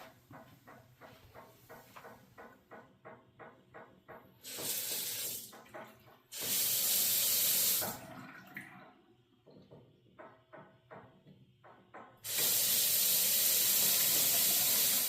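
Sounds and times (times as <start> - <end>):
loud bursts of hissing: 12.2 - 15.0.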